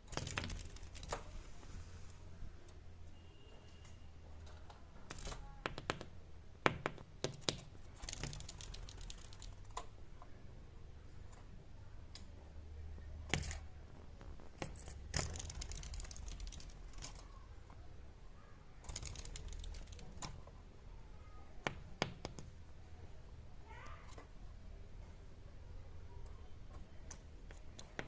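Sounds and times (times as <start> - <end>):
beaks and claws tapping: 4.7 - 10.0, 18.8 - 20.5.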